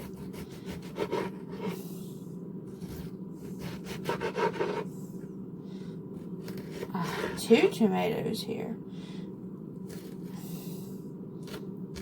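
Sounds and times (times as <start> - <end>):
knife cutting on cutting board: 0.0 - 1.8, 2.8 - 4.9.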